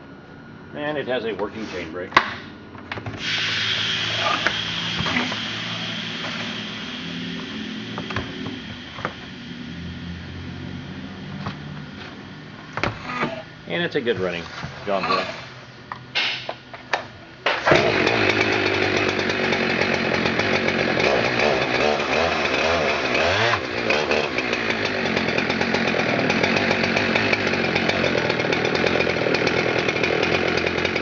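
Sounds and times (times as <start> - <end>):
chainsaw starting and running: 3.3 - 12.0, 17.5 - 31.0.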